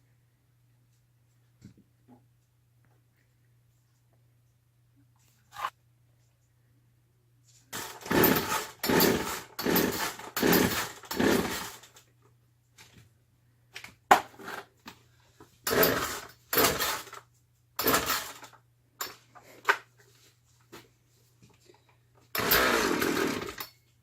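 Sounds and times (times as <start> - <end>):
faint low hum: 0.0 - 7.7
chainsaw starter cord pulls: 7.8 - 12.0, 15.7 - 17.2, 17.8 - 18.6, 22.3 - 23.7.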